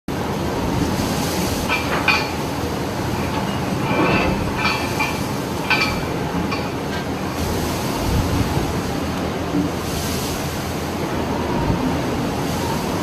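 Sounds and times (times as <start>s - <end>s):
low rumble of ship in storm: 0.1s - 13.0s.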